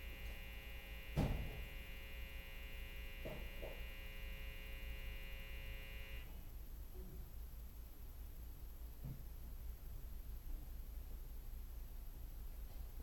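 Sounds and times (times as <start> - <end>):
loudspeaker interference buzz: 0.0 - 6.3
low mains hum: 0.0 - 13.0
loud thump: 1.1 - 1.7.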